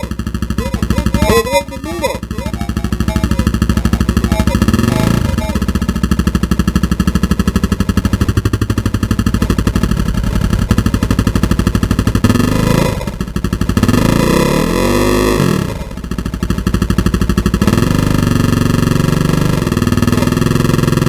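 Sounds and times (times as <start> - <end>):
engine running with rapid pulse: 0.0 - 21.0.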